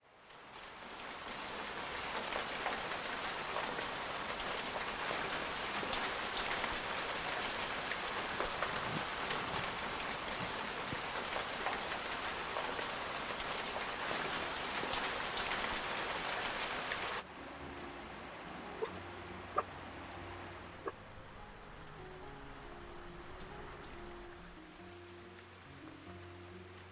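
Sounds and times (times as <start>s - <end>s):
heavy rain falling: 0.1s - 26.9s
raindrops ticking: 0.7s - 17.2s.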